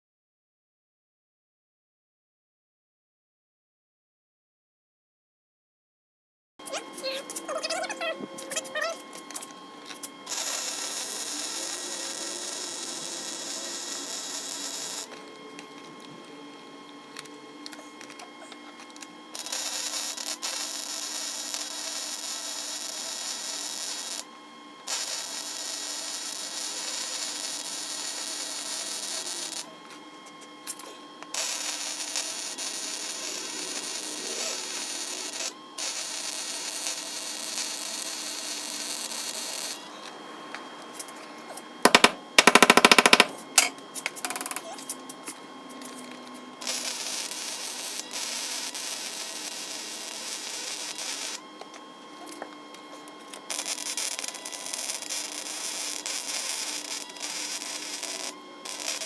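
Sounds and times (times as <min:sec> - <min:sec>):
electric welder crackling hiss: 0:06.6 - 0:15.9, 0:17.1 - 0:29.7, 0:30.4 - 0:39.9, 0:41.9 - 0:51.8, 0:53.3 - 0:59.0.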